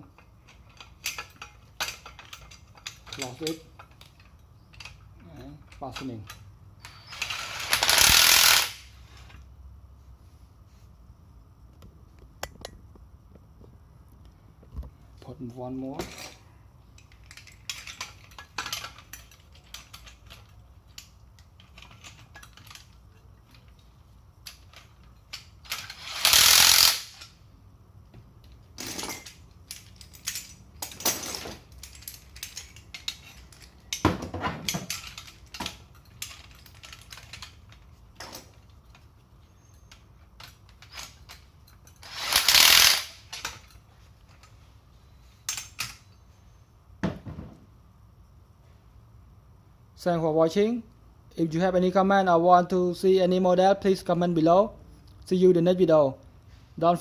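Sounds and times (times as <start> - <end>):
handling clicks and knocks: 28.1 - 42.0.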